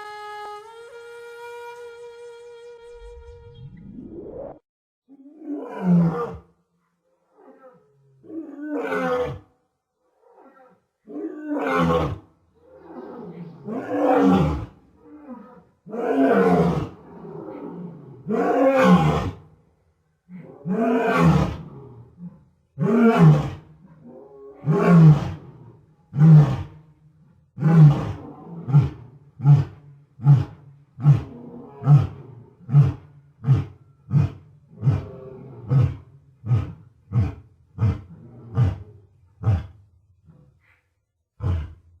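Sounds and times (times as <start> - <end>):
lion roaring: 20.3 - 26.8, 27.6 - 39.8, 41.4 - 41.8.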